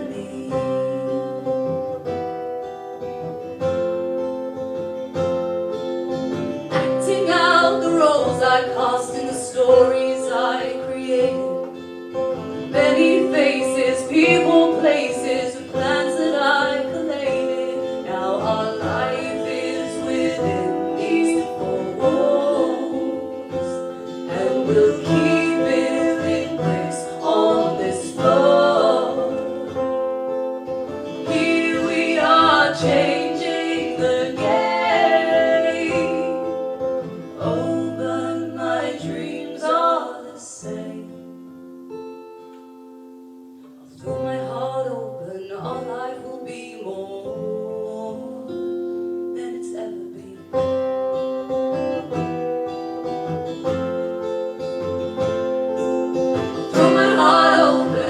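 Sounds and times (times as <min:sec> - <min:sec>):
person singing: 0:00.0 - 0:02.1, 0:06.7 - 0:11.9, 0:12.6 - 0:41.6, 0:43.8 - 0:51.0, 0:55.8 - 0:58.0
acoustic guitar: 0:00.0 - 0:58.0.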